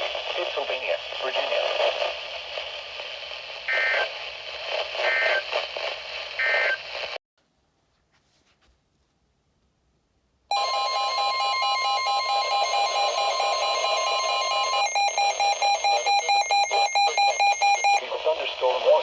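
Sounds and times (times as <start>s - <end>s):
steady alarm tone: 10.5s - 18.0s
rapid electronic beeping: 11.8s - 18.0s.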